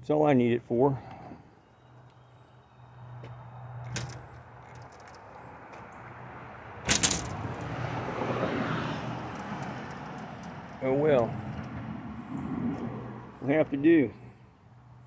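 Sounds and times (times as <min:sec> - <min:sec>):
metal door shutting and latching: 0:03.8 - 0:05.3, 0:06.8 - 0:07.9
door latch clicks: 0:03.9 - 0:05.2, 0:06.8 - 0:07.7.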